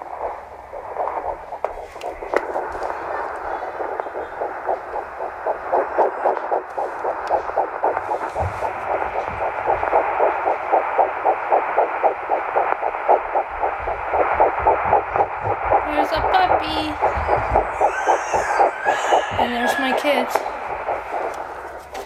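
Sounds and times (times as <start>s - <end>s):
doppler heartbeat whooshing pulses: 0.0s - 22.0s
doppler speaker hiss: 0.0s - 22.0s.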